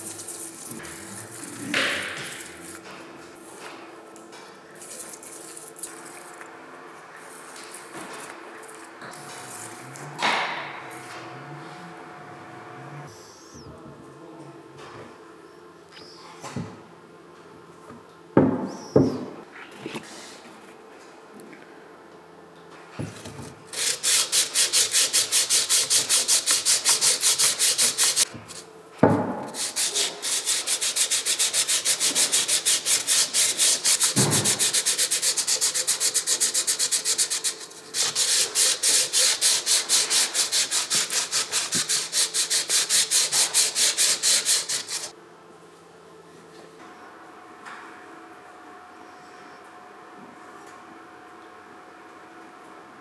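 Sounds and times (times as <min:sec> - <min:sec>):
hand abrading strokes on metal part: 0:23.7 - 0:28.6, 0:29.5 - 0:45.1.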